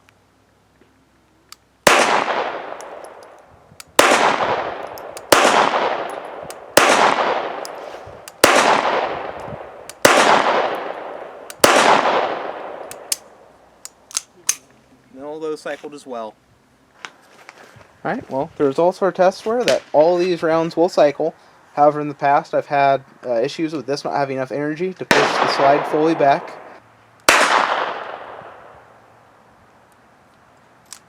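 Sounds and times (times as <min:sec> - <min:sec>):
pistol shots: 0:01.8 - 0:03.3, 0:04.0 - 0:13.3, 0:25.1 - 0:26.7, 0:27.3 - 0:28.6.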